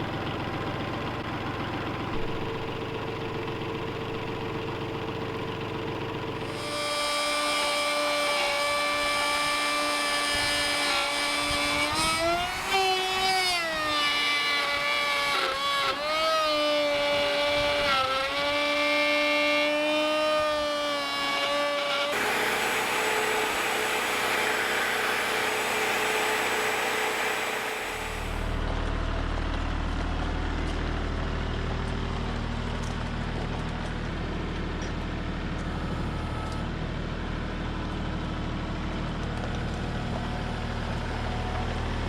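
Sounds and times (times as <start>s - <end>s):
tractor engine whining: 0.0s - 18.9s, 19.6s - 28.6s.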